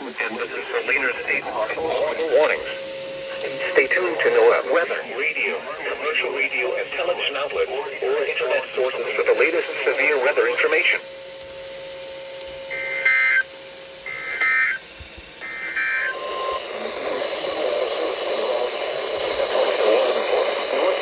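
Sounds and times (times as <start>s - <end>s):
digital data tone bursts: 0.0s - 7.5s, 12.7s - 14.8s, 15.4s - 16.8s
faint voice from radio: 0.0s - 11.2s, 14.1s - 14.8s, 15.4s - 21.0s.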